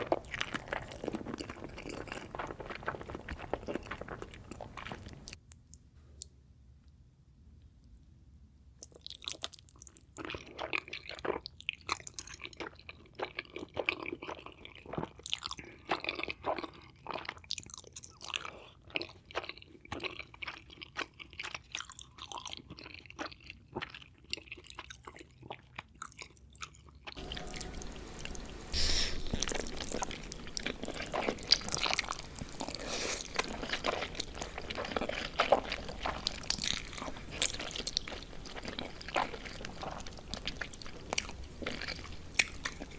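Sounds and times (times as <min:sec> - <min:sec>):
wet chewing mouth sounds: 0:00.0 - 0:06.3, 0:08.8 - 0:42.9
background hiss: 0:27.2 - 0:34.7.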